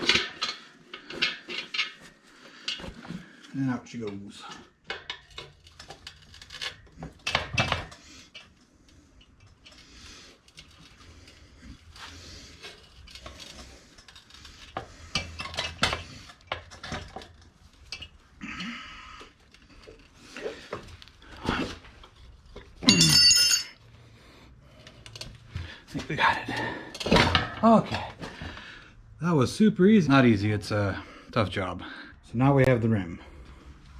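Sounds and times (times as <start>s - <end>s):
metal tools scraping wheel rim: 9.5s - 18.2s.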